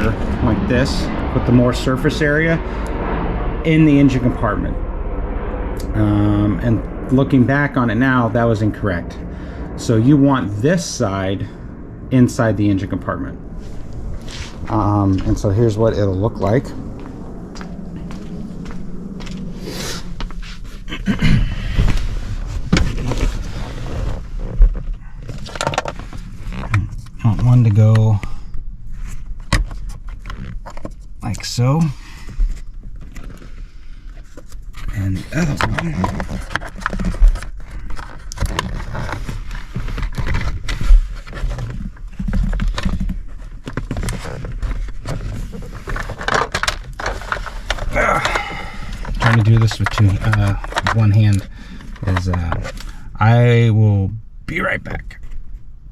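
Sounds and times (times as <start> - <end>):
plastic part scraping: 32.3 - 53.0.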